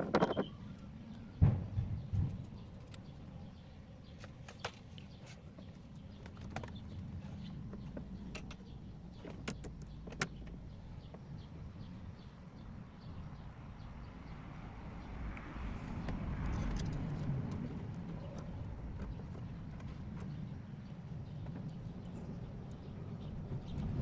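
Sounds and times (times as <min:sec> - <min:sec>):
tools and metal parts clicking: 0:00.0 - 0:00.6.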